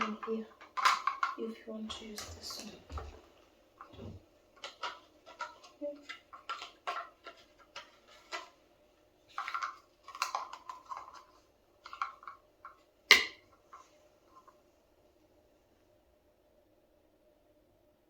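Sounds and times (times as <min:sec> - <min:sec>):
plastic parts clicking and rattling: 0:00.0 - 0:08.6, 0:09.3 - 0:14.6
plastic snap: 0:13.1 - 0:13.4.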